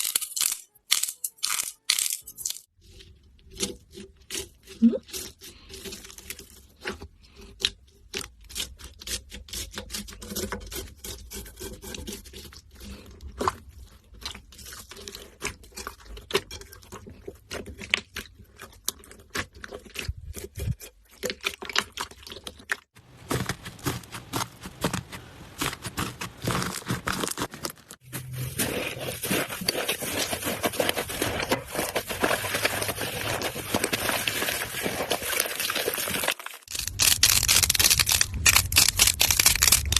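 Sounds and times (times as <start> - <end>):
slime crackling and popping: 21.4 - 28.0, 28.6 - 39.9.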